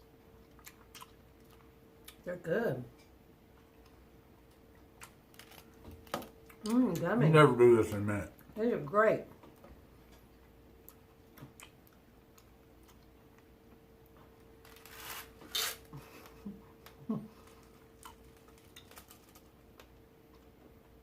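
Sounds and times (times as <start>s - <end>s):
faint steady hum: 0.0s - 21.0s
people chewing candy: 0.4s - 2.2s, 9.3s - 13.9s, 15.9s - 20.9s
wrapper rustle: 18.2s - 19.5s.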